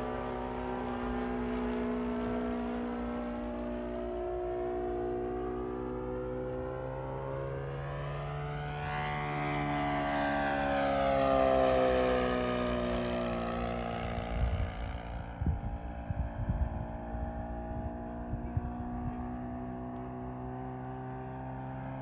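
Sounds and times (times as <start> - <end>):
model plane engine flying past: 0.0 - 22.0
wind buffeting microphone: 13.7 - 19.9.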